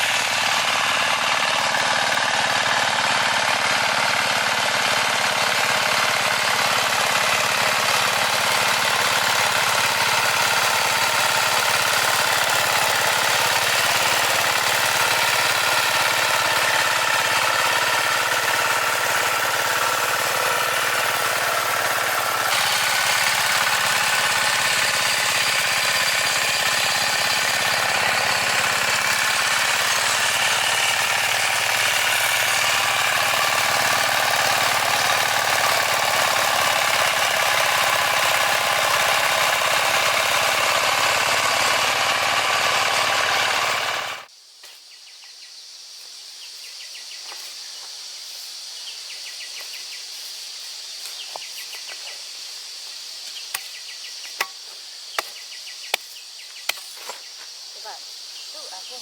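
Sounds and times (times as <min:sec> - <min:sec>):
farm machine engine running: 0:00.0 - 0:44.3.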